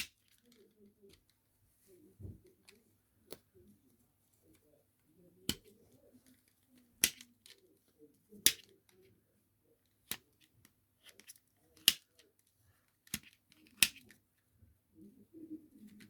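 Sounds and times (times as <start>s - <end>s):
plastic puzzle pieces clicking: 5.5s - 7.6s, 8.4s - 9.1s, 11.0s - 12.3s, 13.0s - 14.2s.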